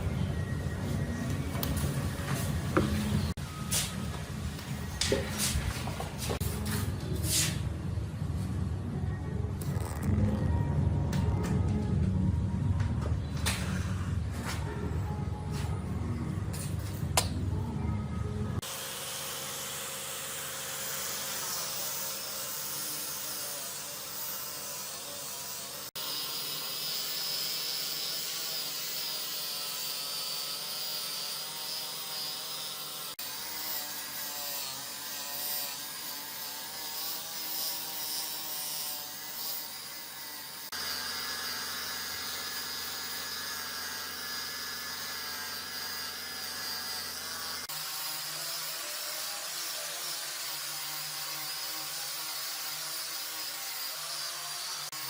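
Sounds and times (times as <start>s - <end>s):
electric power tools on wood: 18.6s - 55.0s.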